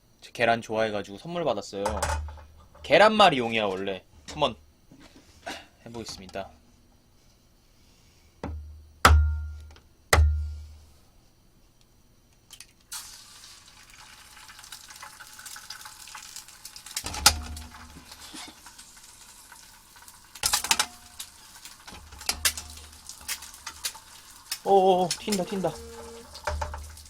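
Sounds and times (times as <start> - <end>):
egg knocking on frying pan: 8.4 - 10.6, 25.1 - 27.0
egg sizzling in hot pan: 12.9 - 27.0.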